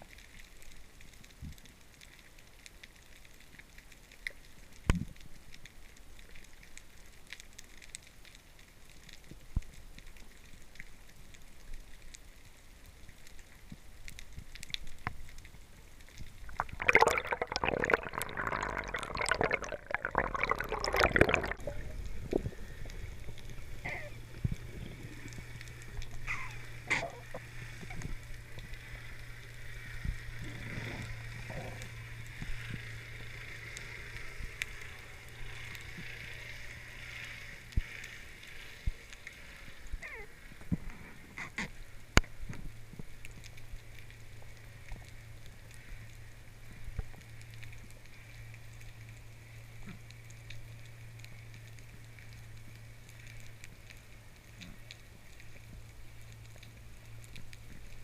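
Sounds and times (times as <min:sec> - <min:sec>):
underwater water noise: 0:00.0 - 0:58.0
bubbling and splashing: 0:14.3 - 0:28.8.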